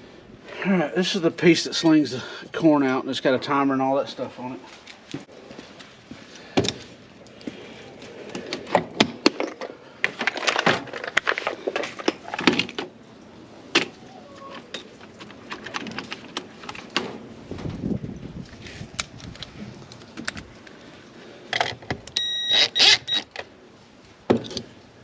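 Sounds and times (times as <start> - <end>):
parts clicking and rattling: 8.3 - 13.0, 14.5 - 17.2, 21.5 - 23.5.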